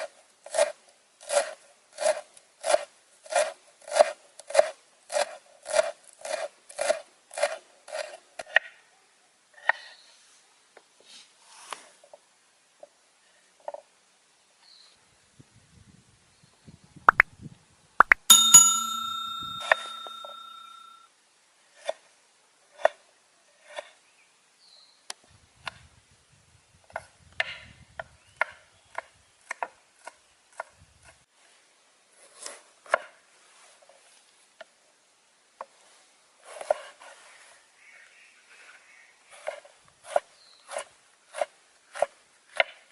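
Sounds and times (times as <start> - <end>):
metal cooking vessel ringing: 18.3 - 21.0.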